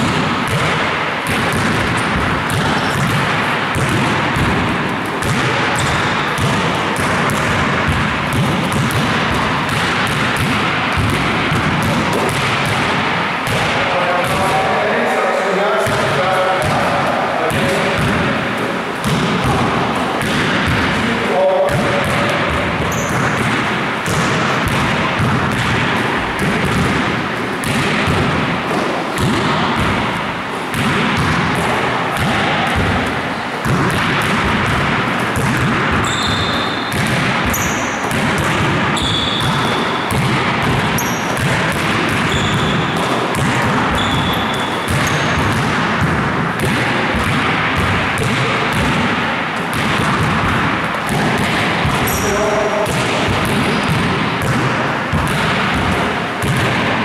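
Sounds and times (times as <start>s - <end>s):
basketballs bouncing: 0.0s - 57.0s
high-pitched shoe squeaks: 22.9s - 23.2s, 36.0s - 36.9s, 37.5s - 38.0s, 39.0s - 39.9s, 41.0s - 41.4s, 42.3s - 42.7s, 43.9s - 45.4s, 52.1s - 52.4s.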